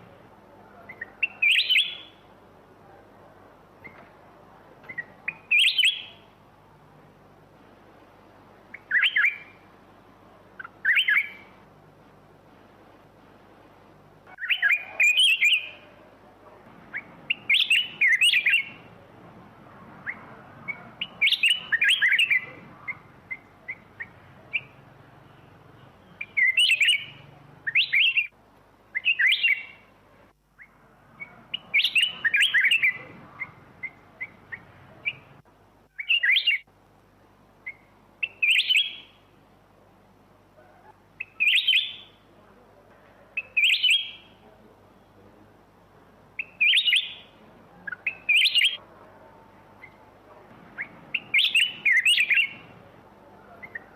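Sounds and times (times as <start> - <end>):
bird singing: 0.7 - 2.3, 4.8 - 6.4, 8.7 - 9.6, 10.6 - 11.6, 14.3 - 16.0, 16.8 - 18.9, 20.0 - 29.9, 30.6 - 36.7, 37.6 - 39.2, 41.2 - 42.2, 43.4 - 44.4, 46.4 - 48.8, 49.8 - 53.9.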